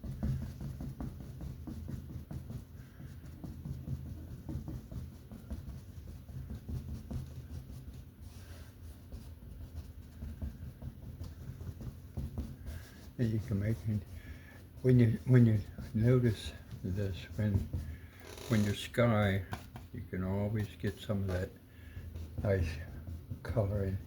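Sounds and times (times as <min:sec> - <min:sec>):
paintbrush scratching on canvas: 0:00.0 - 0:24.0.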